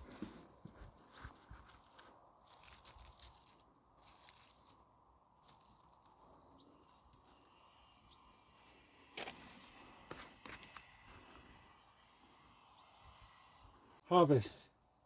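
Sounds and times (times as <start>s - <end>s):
hands rustling through soil: 0.0s - 11.6s.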